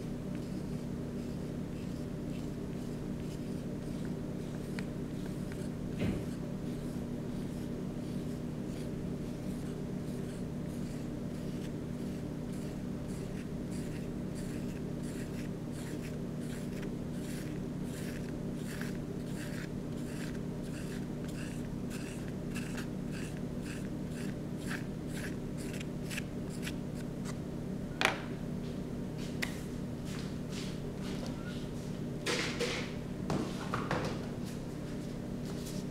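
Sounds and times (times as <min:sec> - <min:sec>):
paintbrush stroking on paper: 0:00.4 - 0:26.7.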